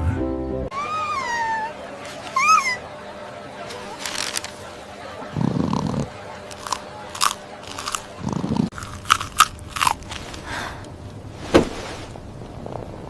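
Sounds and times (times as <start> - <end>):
sharp crunches and clicks: 3.7 - 4.6, 5.4 - 10.5.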